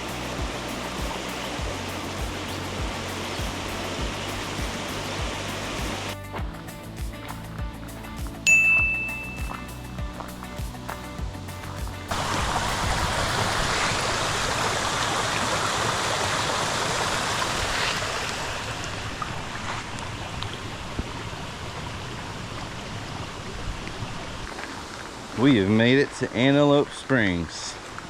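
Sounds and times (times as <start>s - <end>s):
stream water rushing: 0.0s - 28.0s.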